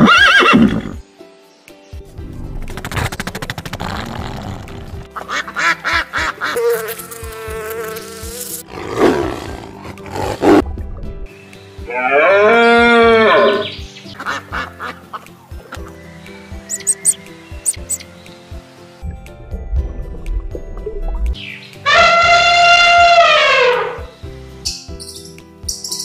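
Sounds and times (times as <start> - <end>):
background music: 0.0 - 26.0
animal calls: 11.9 - 15.0, 16.6 - 18.0.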